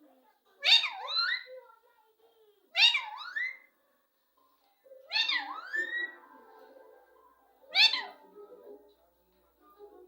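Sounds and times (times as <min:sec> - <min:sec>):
parrot calling: 0:00.6 - 0:01.5, 0:02.8 - 0:03.7, 0:05.1 - 0:06.2, 0:07.7 - 0:08.2.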